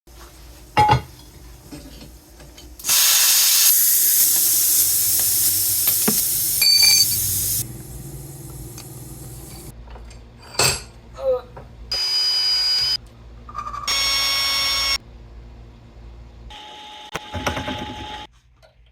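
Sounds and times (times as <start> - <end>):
compressed air hissing: 2.8 - 9.7.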